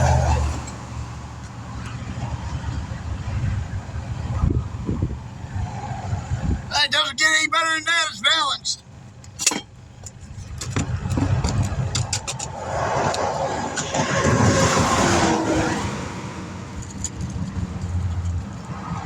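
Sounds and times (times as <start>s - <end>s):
highway traffic rumble: 0.0s - 19.0s
equipment clicks and clanks: 9.1s - 14.1s, 16.7s - 18.6s
vehicle passing by: 11.3s - 16.9s.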